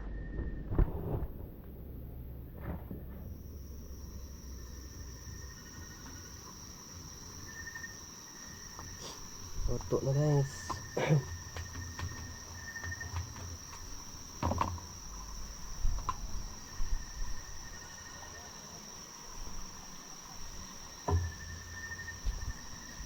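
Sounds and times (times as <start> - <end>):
insects chirring: 0.2 - 23.0
knocks and clatters: 9.7 - 14.9.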